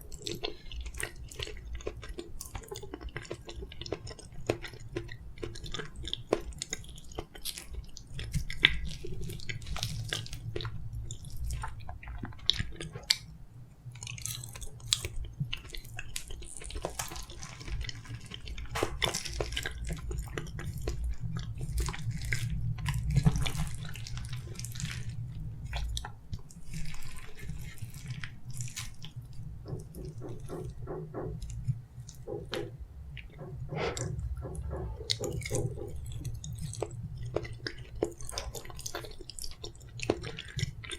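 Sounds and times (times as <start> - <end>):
close chewing with mouth smacks: 0.0 - 40.9
low construction rumble: 15.4 - 40.9.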